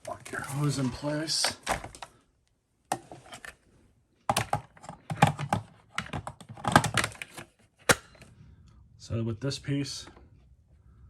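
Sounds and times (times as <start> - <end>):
plastic parts clicking and knocking: 0.8 - 2.2, 4.3 - 8.3.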